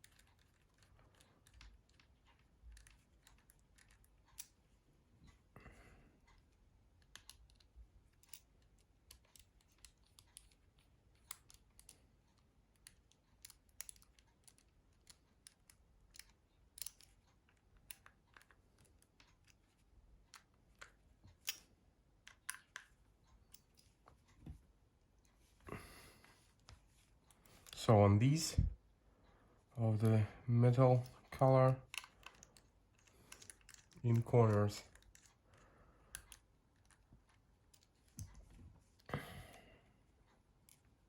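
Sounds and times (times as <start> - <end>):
screwdriver clicking on plastic housing: 31.9 - 35.3.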